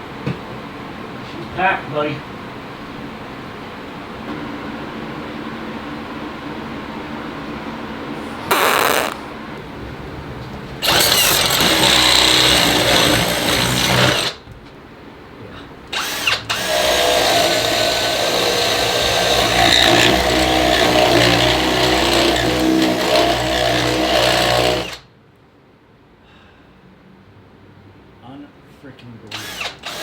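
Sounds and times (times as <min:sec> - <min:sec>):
power drill running under load: 0:10.8 - 0:14.4, 0:15.9 - 0:25.0, 0:29.3 - 0:30.0.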